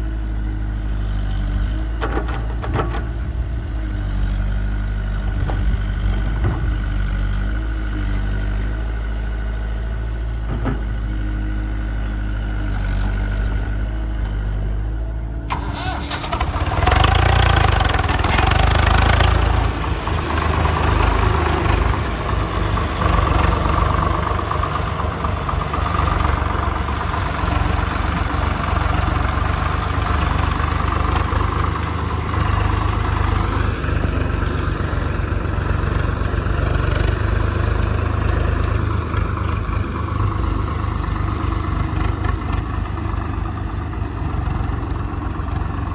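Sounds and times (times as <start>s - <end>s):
diesel engines idling: 3.2s - 45.9s
engine revving: 15.5s - 43.5s.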